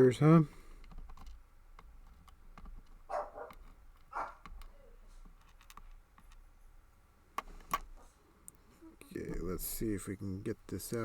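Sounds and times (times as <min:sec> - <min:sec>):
dogs barking: 0:03.1 - 0:05.0.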